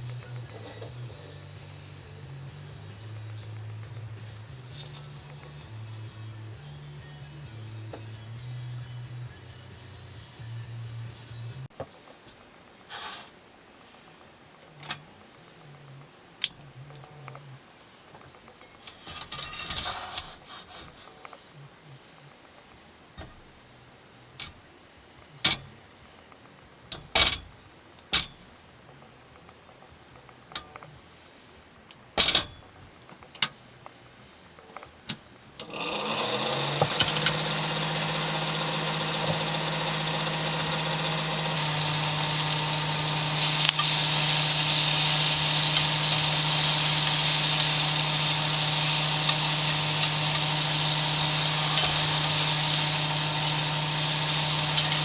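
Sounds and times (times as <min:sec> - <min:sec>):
frying sizzle from hot pan: 0:36.0 - 0:55.0.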